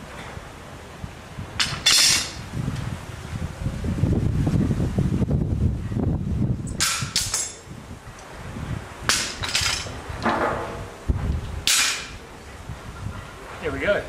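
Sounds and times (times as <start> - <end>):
metal clamps clinking: 1.6 - 2.4, 9.1 - 10.8.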